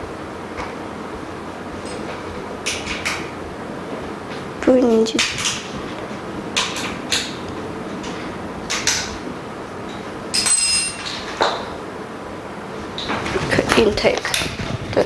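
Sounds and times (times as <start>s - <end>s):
metallic clink: 10.3s - 11.2s.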